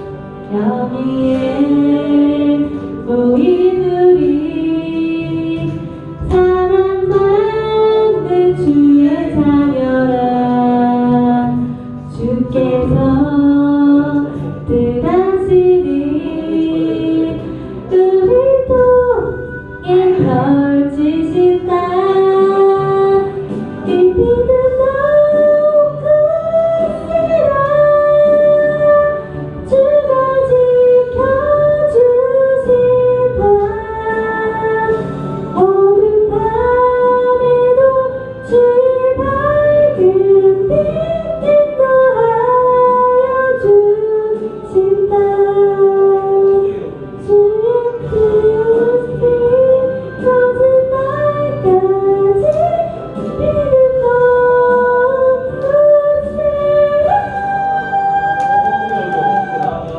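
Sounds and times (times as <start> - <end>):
soft low accompaniment: 0.0 - 59.9
woman singing gospel song: 0.5 - 35.0.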